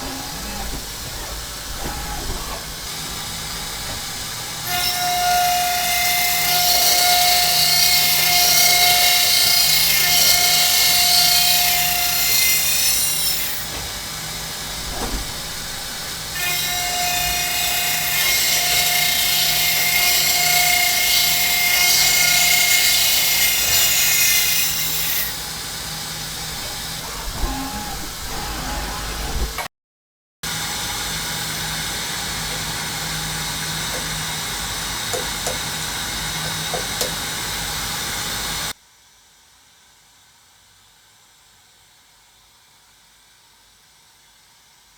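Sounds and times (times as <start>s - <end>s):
saw cutting metal with hiss and whine: 0.0s - 29.7s.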